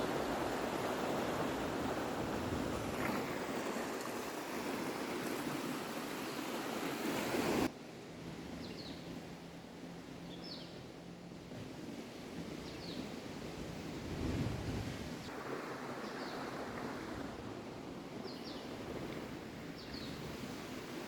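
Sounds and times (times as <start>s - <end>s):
sea waves washing: 0.0s - 7.7s, 13.8s - 21.0s
wind: 0.0s - 21.0s.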